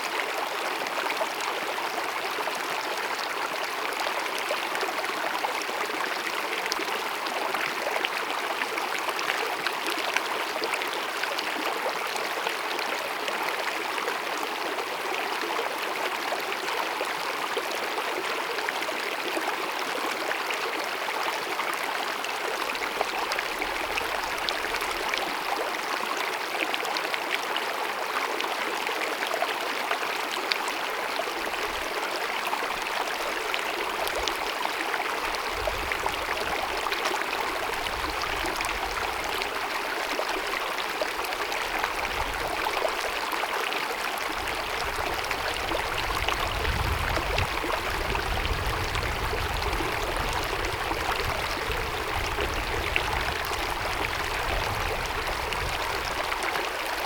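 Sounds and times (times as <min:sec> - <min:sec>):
stream babbling over rocks: 0:00.0 - 0:57.0.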